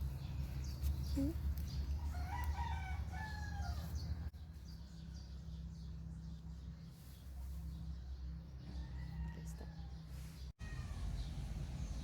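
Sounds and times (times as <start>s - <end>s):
rooster crowing: 2.0s - 4.3s, 8.7s - 10.0s.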